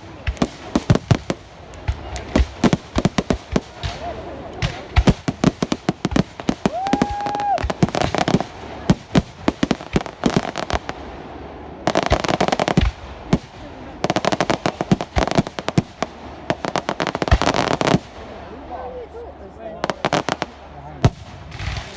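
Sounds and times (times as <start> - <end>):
fireworks bangs and crackling: 0.0 - 21.9
firework whistle: 6.6 - 7.8.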